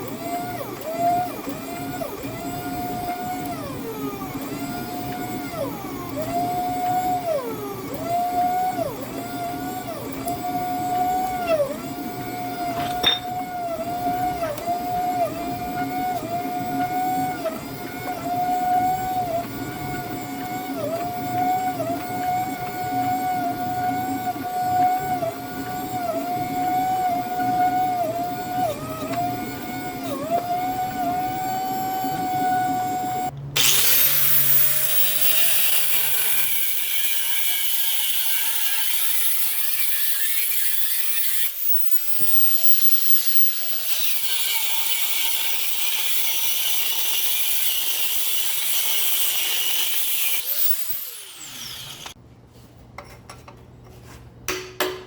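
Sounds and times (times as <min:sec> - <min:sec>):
electric grinder grinding steel: 0:00.0 - 0:52.2.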